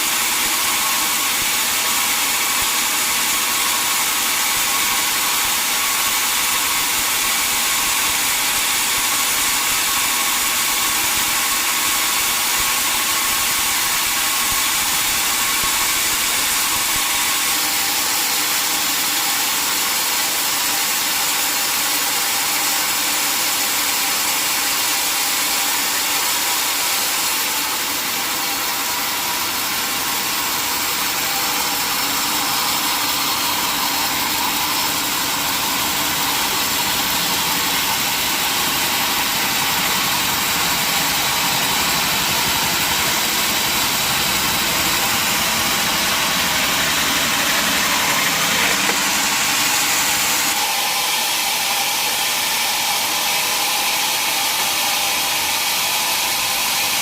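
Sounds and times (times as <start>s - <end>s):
saw machinery hissing: 24.9s - 53.8s.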